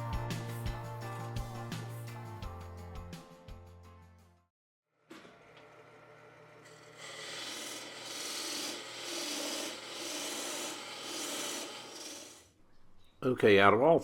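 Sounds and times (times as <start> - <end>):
sanding wood: 7.0 - 12.5.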